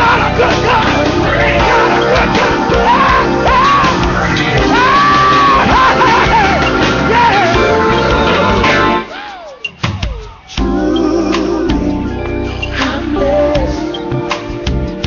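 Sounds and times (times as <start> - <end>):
sliding vocal runs: 0.0 - 9.7
live gospel band: 0.0 - 15.0.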